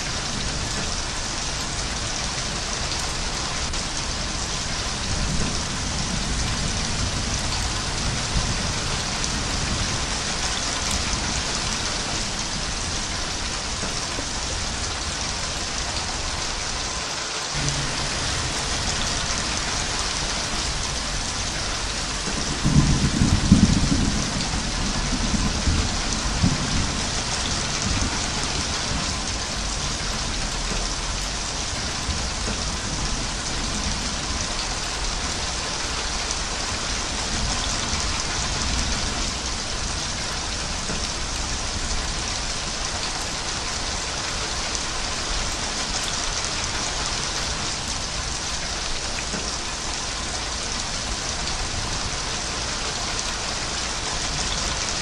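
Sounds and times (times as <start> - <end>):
heavy rain hissing: 0.0 - 55.0
thunder rumbling: 4.3 - 15.2, 17.6 - 35.6.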